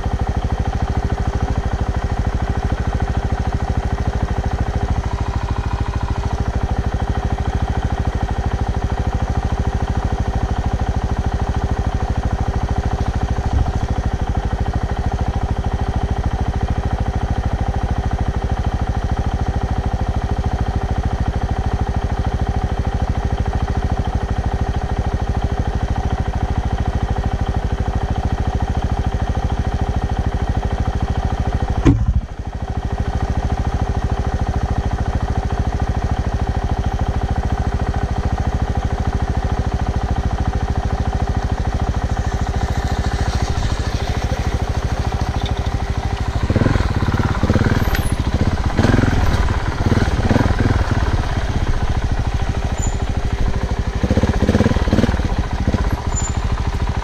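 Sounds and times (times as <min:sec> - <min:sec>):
engine idling: 0:00.0 - 0:57.0
sharp knock: 0:31.8 - 0:32.3.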